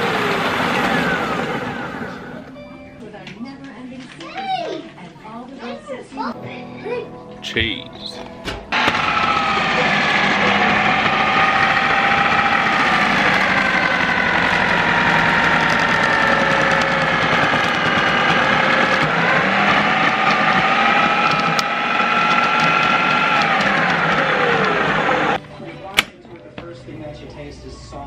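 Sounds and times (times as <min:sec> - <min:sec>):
blender motor whirring: 0:00.0 - 0:02.6, 0:08.7 - 0:25.4.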